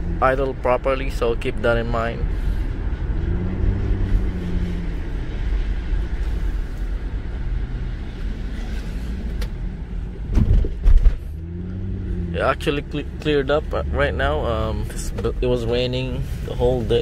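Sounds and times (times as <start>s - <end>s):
car engine and road noise: 0.0s - 17.0s.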